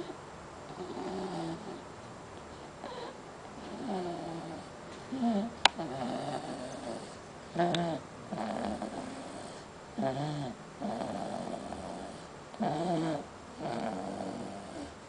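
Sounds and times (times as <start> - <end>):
pet snoring: 0.7 - 1.8, 2.8 - 15.0.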